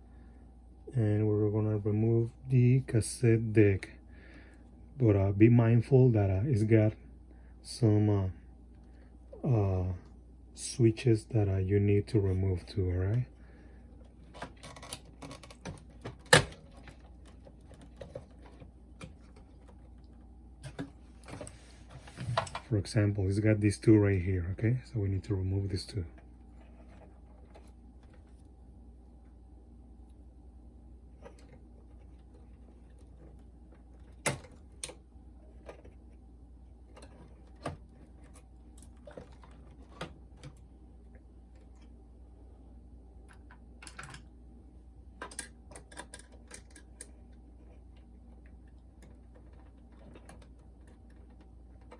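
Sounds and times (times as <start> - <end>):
faint low hum: 0.0 - 51.9
tools and plastic parts clicking: 14.2 - 19.8, 45.2 - 47.1.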